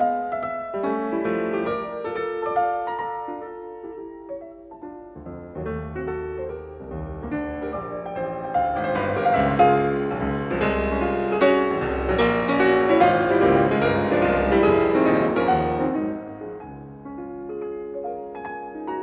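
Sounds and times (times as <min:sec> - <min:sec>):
flowing piano music: 0:00.0 - 0:19.0.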